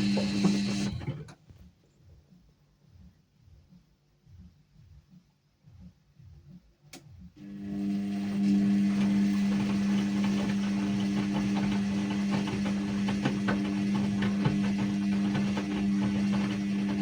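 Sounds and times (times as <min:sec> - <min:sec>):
washing machine electric hum: 0:00.0 - 0:01.8, 0:05.6 - 0:17.0.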